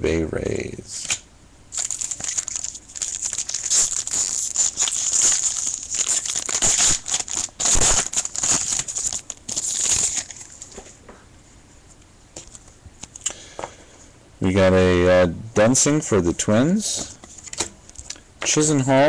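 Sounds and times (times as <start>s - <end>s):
foil wrapper crinkling and tearing: 1.1s - 10.8s.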